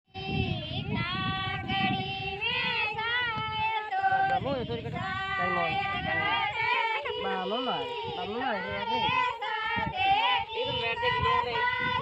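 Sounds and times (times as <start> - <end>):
woman singing folk song: 0.2 - 4.4.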